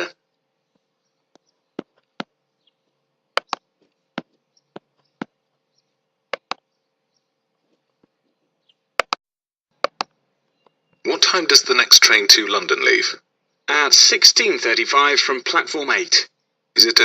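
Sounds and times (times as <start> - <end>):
sharp clicks: 3.4 - 5.3, 6.3 - 6.7, 9.0 - 9.2, 9.8 - 10.8.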